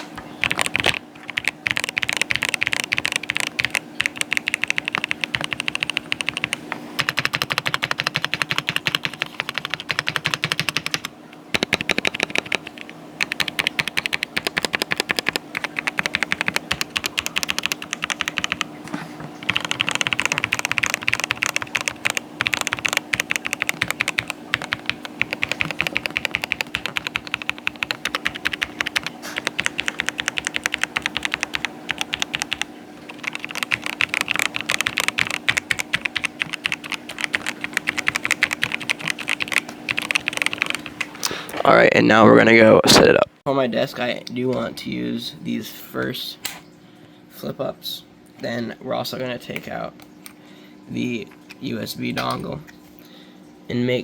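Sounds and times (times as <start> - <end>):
faint steady hum: 0.0 - 54.0
mechanical keyboard typing: 0.4 - 18.7, 19.4 - 41.1.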